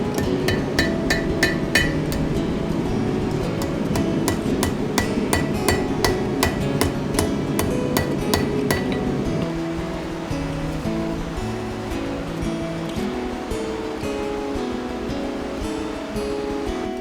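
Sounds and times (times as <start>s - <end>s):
hammer striking iron on anvil: 0.0s - 9.5s.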